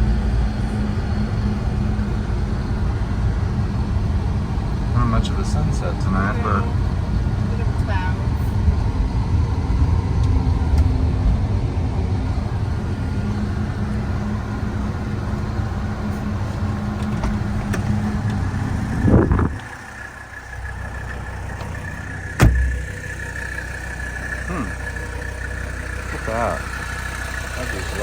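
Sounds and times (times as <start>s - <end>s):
car engine and road noise: 0.0s - 28.0s
sharp thump: 22.4s - 22.8s.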